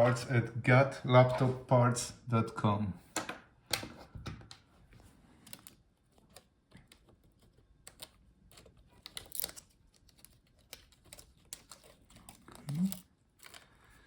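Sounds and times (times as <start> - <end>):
small plastic parts clicking: 5.5 - 13.8.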